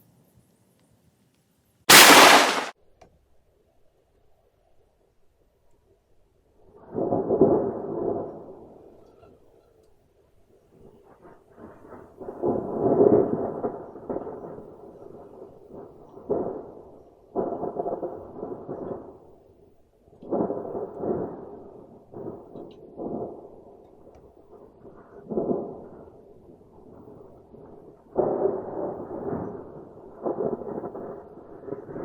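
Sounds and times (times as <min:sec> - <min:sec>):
thunder claps and rumbles: 0:01.9 - 0:02.7.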